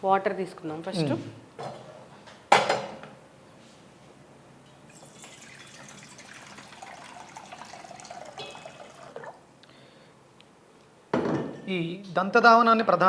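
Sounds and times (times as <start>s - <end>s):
water pouring into a vessel: 4.9s - 9.5s.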